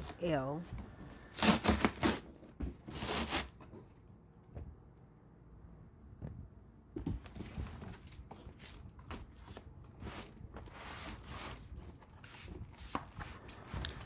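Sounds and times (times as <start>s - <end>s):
cardboard box rustling and scraping: 0.0s - 4.0s, 7.1s - 14.0s.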